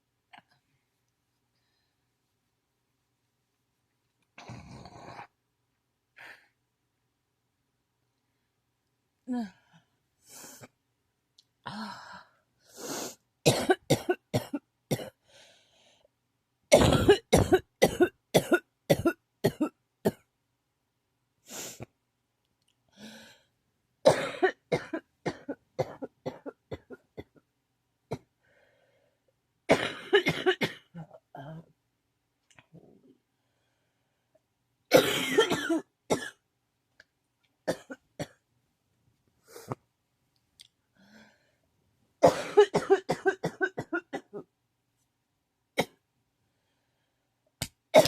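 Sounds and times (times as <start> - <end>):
person coughing: 13.5 - 15.2, 16.7 - 20.2, 24.1 - 27.4, 29.7 - 31.6, 34.9 - 36.4, 42.2 - 44.4.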